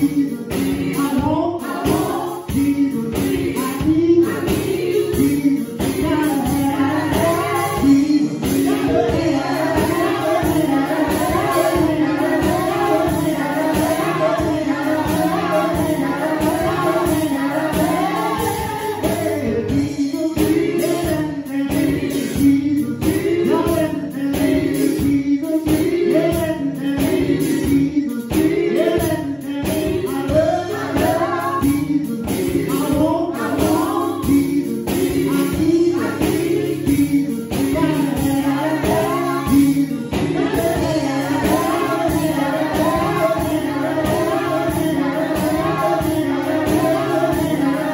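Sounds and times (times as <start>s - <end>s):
voices singing gospel: 0.0s - 47.9s
steady beat: 1.9s - 21.2s, 33.7s - 47.9s.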